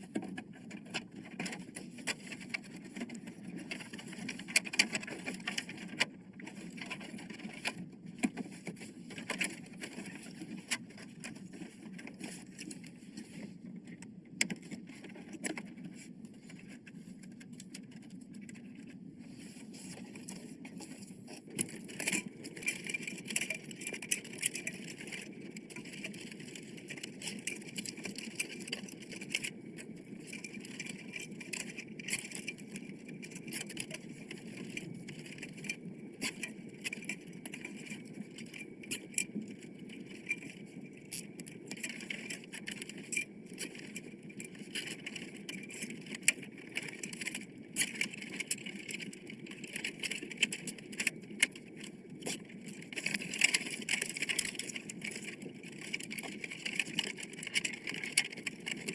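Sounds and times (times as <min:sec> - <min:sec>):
clicks of small parts: 0:21.5 - 0:58.9.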